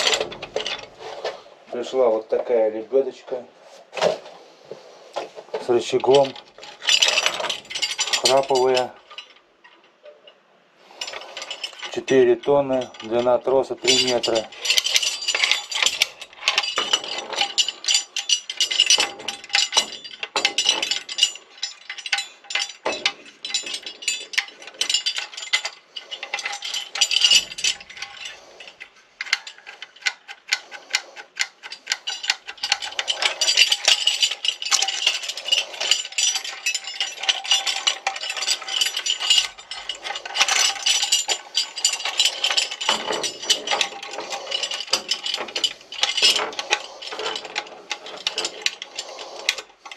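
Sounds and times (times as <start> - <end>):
metal parts rattling: 0.0 - 1.4, 5.6 - 49.9
ratchet winch clicking: 13.9 - 49.9.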